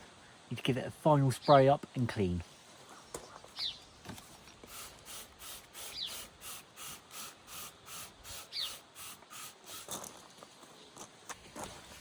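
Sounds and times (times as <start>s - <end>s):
bird chirping: 2.8s - 4.2s, 5.8s - 6.4s, 8.5s - 8.8s.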